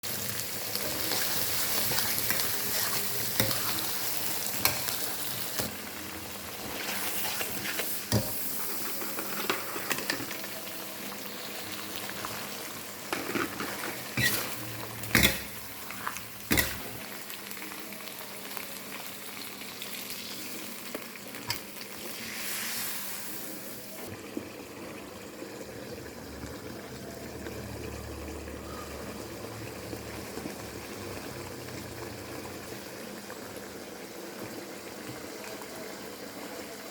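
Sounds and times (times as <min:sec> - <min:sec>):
meat sizzling in a pan: 0:00.0 - 0:24.2.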